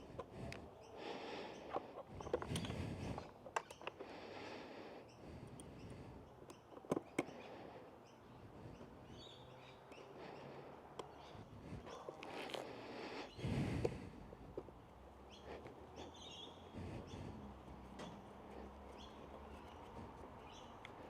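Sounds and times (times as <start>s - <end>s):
tools clicking and tapping: 1.7s - 4.0s, 6.4s - 7.4s.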